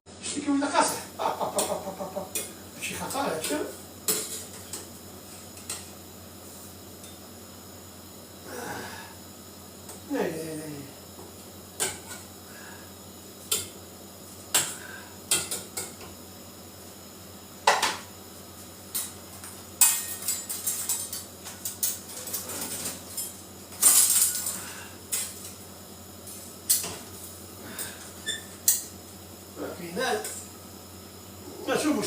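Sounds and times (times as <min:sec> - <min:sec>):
utensils and dishes clinking: 0:19.8 - 0:25.5.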